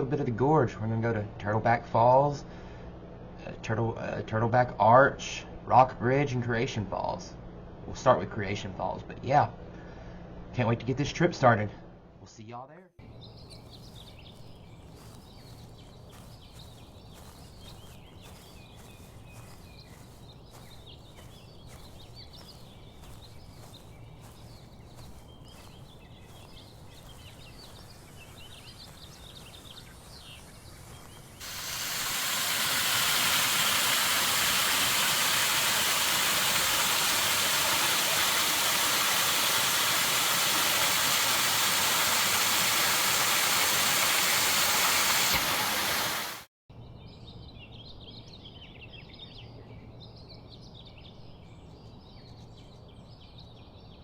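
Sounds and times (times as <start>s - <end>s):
birds chirping: 13.0s - 46.4s
waterfall rushing water: 31.4s - 46.4s.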